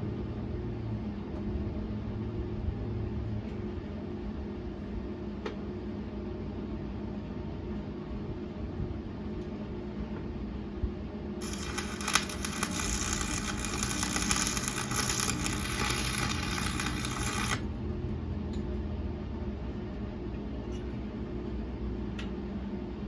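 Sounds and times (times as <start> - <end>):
steady low hum: 0.0 - 23.0
welding arc crackling: 11.4 - 17.7.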